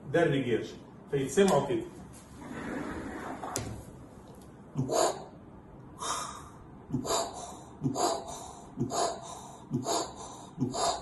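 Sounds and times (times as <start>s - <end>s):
man imitating heartbeat with mouth: 4.8s - 5.4s, 6.0s - 11.0s.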